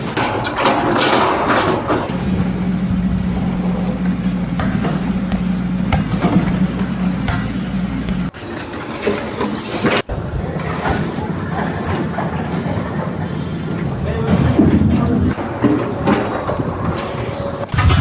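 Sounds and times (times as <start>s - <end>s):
engine running steadily: 1.9s - 8.4s.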